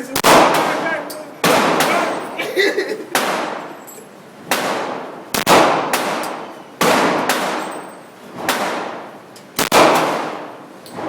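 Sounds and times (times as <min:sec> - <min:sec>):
pistol shots with echo: 0:00.1 - 0:02.3, 0:04.5 - 0:07.9, 0:08.5 - 0:10.6.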